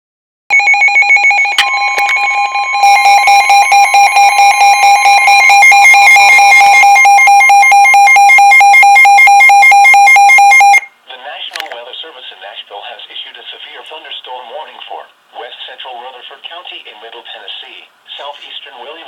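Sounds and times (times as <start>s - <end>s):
electronic alarm pulsing tones: 0.5s - 10.9s
steady warning tone: 0.5s - 10.9s.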